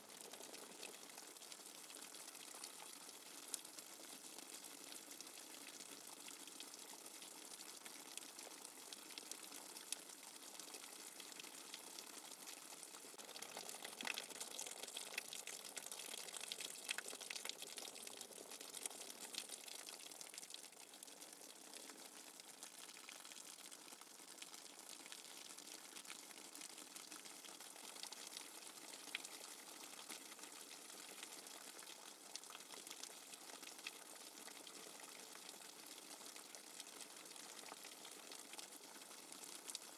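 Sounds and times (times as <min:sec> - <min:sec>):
water dripping: 0:13.2 - 0:21.2.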